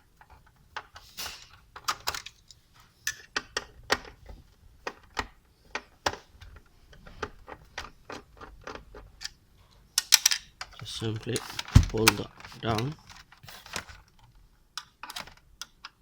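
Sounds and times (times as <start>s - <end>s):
plastic and metal parts knocking: 10.1s - 13.4s.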